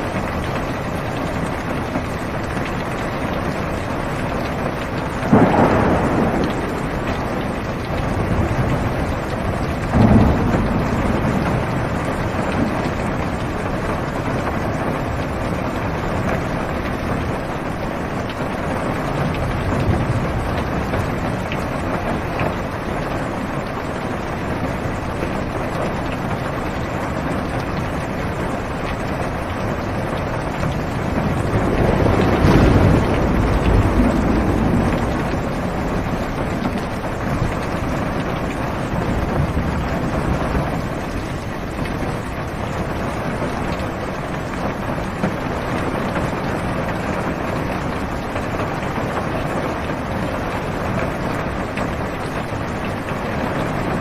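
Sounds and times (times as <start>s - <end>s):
heavy rain on a car: 0.0s - 54.0s
low rumble of thunder: 0.0s - 54.0s.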